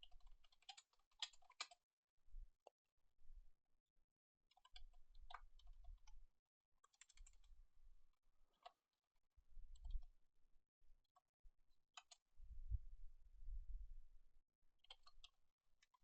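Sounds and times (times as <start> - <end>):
faint keyboard typing: 0.0 - 1.8, 4.5 - 6.2, 6.8 - 7.6, 9.7 - 10.2, 11.9 - 12.3, 14.8 - 16.0.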